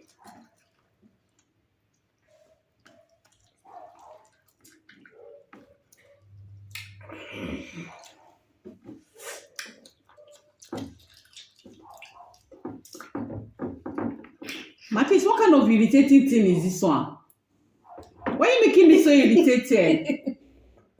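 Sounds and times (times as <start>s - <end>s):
clicks and drip-like noises: 0.0s - 7.1s, 7.8s - 15.0s.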